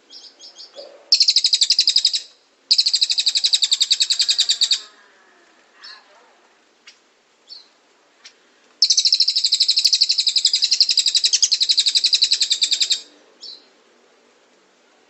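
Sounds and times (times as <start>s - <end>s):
bird chip calls: 0.1s - 4.9s, 6.8s - 13.7s
fast high bird trill: 1.1s - 4.9s, 8.8s - 13.1s.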